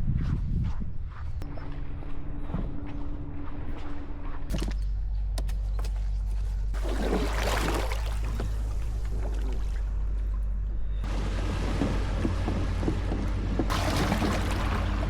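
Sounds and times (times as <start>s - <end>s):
steady low rumble: 0.0s - 15.0s
water splashing against kayak hull: 6.8s - 15.0s.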